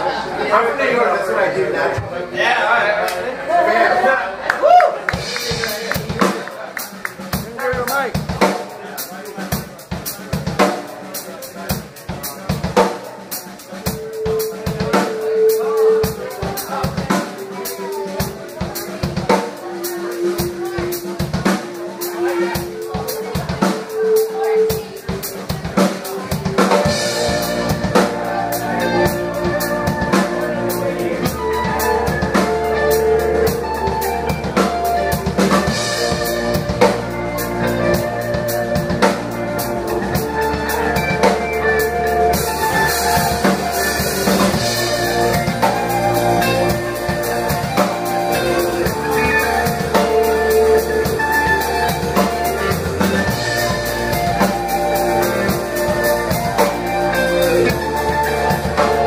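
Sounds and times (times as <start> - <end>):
rock band playing live: 3.9 - 59.0
bass drum and snare beat: 5.1 - 8.7.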